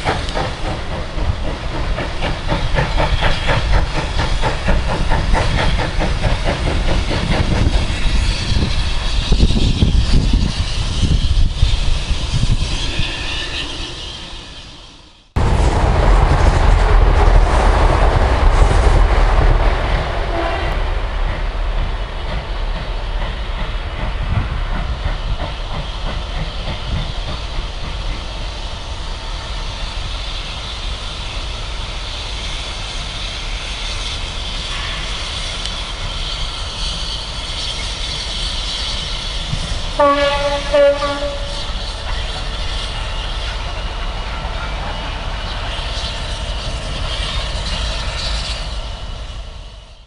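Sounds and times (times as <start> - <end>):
train wheels clattering on rails: 0.0 - 14.6, 15.4 - 49.9
train horn: 20.2 - 21.0, 39.9 - 41.8.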